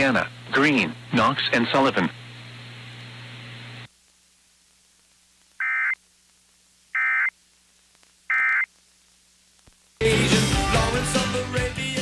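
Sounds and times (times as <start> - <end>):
short electronic data bursts: 5.6 - 6.0, 6.9 - 7.3, 8.3 - 8.7.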